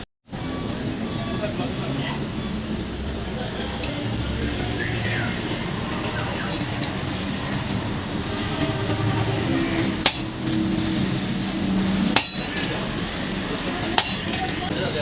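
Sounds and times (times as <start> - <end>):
workshop hum: 0.0 - 14.9
iron striking iron: 6.3 - 7.0, 10.0 - 10.7, 12.0 - 12.9, 13.9 - 14.7.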